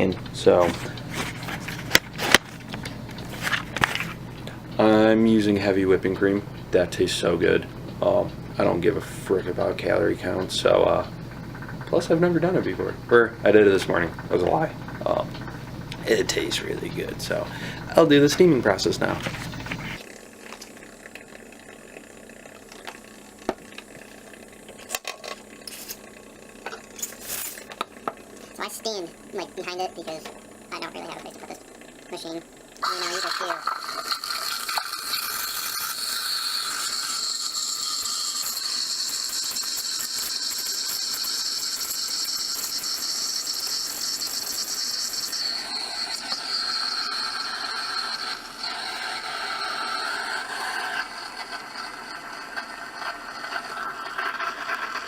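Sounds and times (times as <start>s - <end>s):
steam wand hissing: 32.8s - 55.0s.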